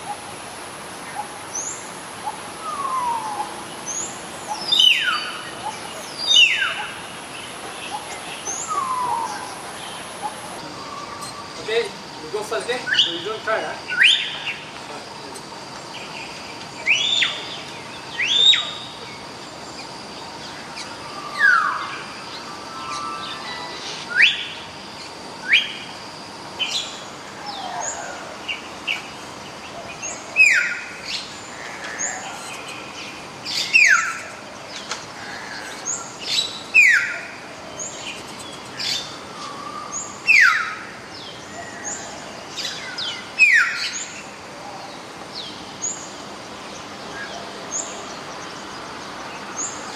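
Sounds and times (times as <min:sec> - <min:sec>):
myna bird whistled calls: 0:13.9 - 0:14.6.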